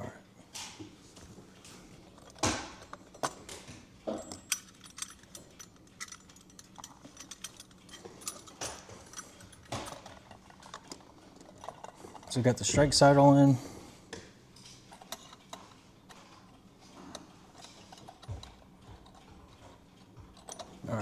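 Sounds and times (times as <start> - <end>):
small metallic clicks of clock parts: 2.2 - 12.4.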